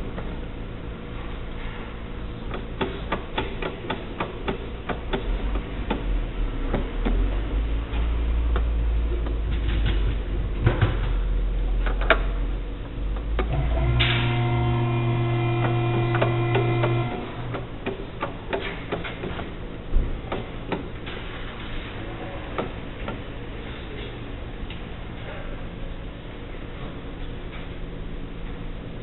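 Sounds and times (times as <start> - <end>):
low steady hum: 0.0 - 29.0
motor running: 13.4 - 17.7.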